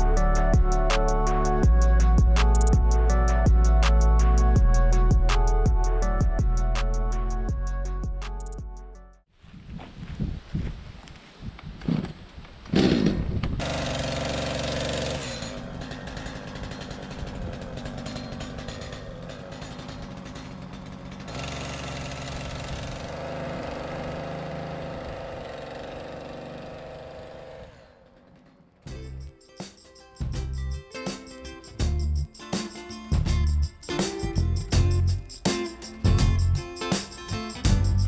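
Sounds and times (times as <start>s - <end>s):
chainsaw running: 13.6s - 28.5s.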